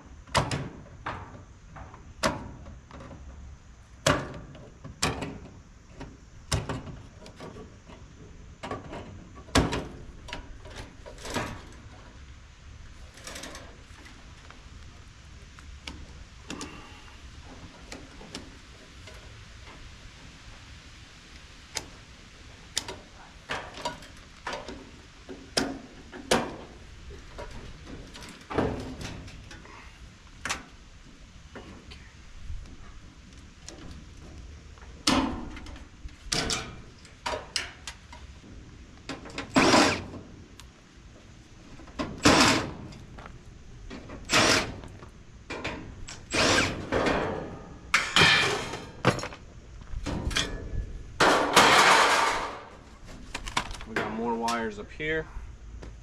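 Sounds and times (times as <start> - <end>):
metal parts clanking: 50.1 - 52.7.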